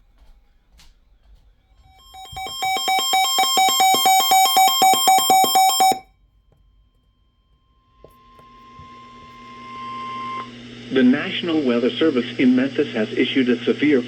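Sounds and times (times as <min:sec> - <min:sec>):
electronic alert beeps: 0:02.2 - 0:06.0.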